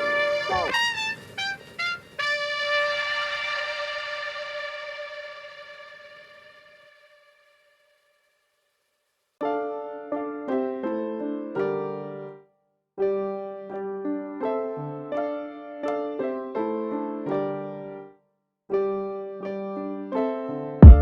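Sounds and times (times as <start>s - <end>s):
piano notes and chords: 9.4s - 21.0s.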